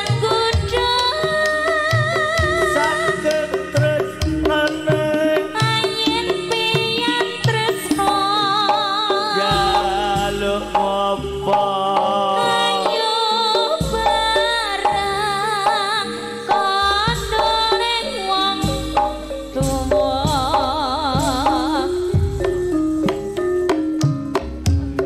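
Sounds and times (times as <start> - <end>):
gamelan ensemble playing: 0.0 - 25.0
hand drum playing: 0.0 - 25.0
wavering ornamented melody: 1.2 - 25.0.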